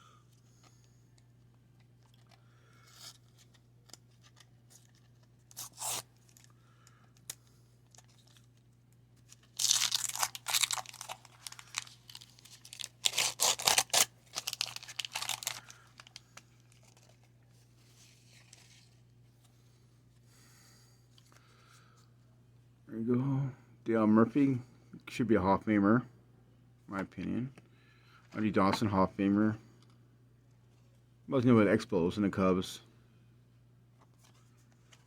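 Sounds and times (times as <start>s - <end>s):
paper wrapper tearing and crinkling: 2.9s - 6.5s, 9.3s - 17.2s.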